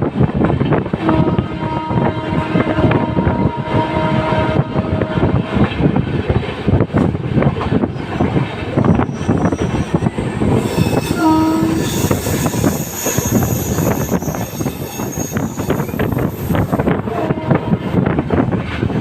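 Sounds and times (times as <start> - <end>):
train rumbling on rails: 0.0 - 19.0
locomotive horn: 1.0 - 5.8, 10.8 - 14.4, 15.0 - 18.2.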